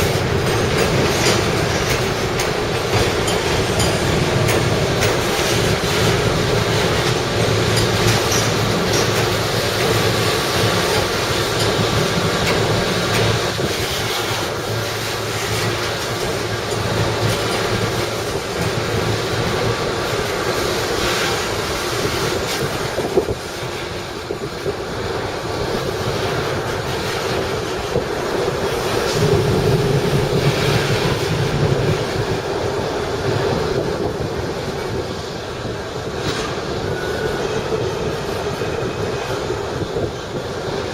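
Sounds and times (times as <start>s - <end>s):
clicks over rail joints: 0.0s - 24.8s
low locomotive engine hum: 0.0s - 40.9s
train wheels on rails: 0.0s - 40.9s.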